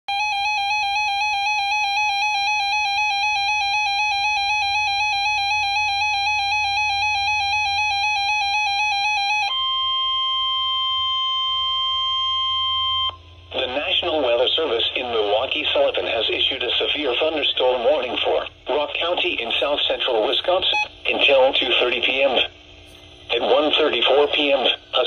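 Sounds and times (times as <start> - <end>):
warbling electronic alarm: 0.1 - 16.2.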